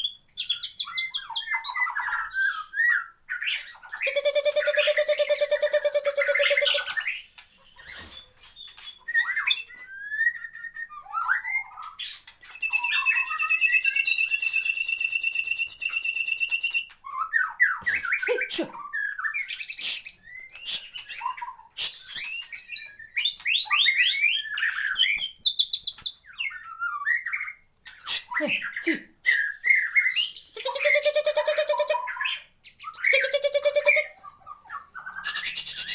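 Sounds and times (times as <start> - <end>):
bird singing whistles and trills: 0.0 - 35.9.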